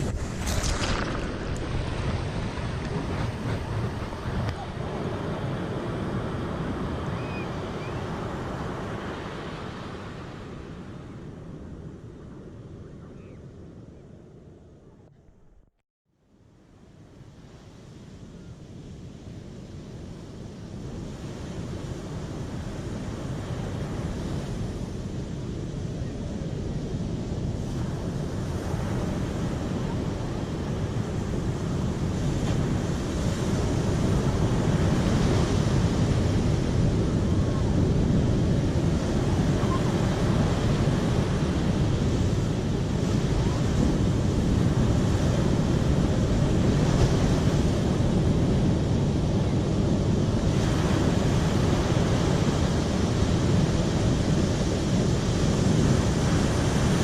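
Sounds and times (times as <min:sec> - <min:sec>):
flowing water rushing: 0:00.0 - 0:04.8.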